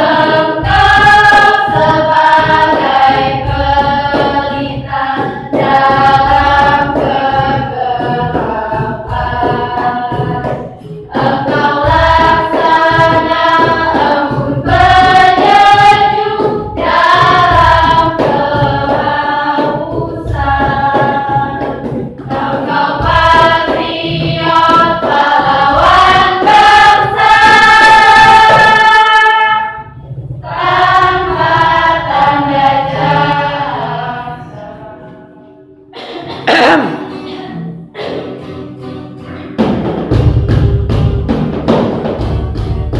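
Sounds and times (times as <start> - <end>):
choir singing: 0.0 - 37.7.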